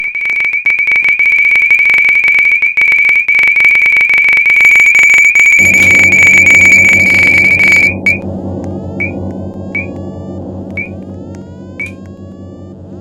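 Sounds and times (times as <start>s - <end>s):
fire alarm high-pitched tone: 0.0s - 12.9s
low humming: 5.6s - 13.0s.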